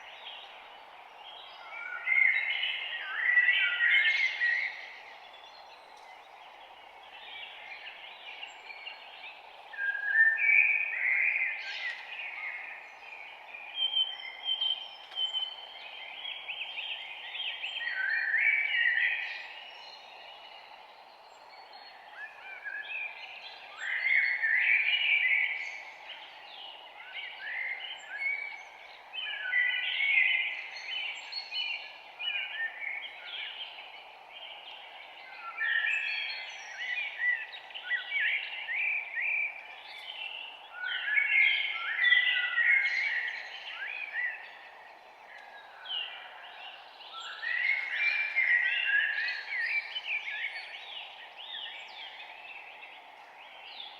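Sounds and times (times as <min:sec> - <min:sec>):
low background hiss: 0:00.0 - 0:53.9
songbirds chirping and trilling: 0:00.0 - 0:53.9.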